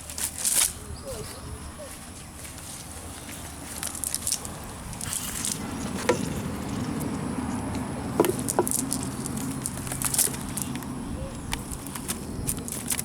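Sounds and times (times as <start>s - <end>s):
crackles: 2.5s - 5.8s, 8.4s - 13.0s.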